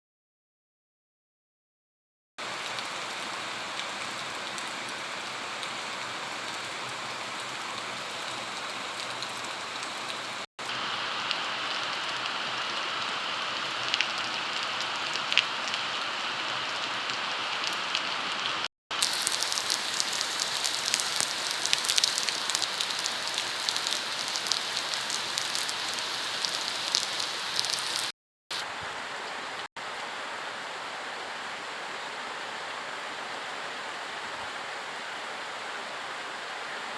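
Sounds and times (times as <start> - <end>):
raindrops pattering on a surface: 2.4 - 29.4
heavy rain hissing: 2.4 - 34.1.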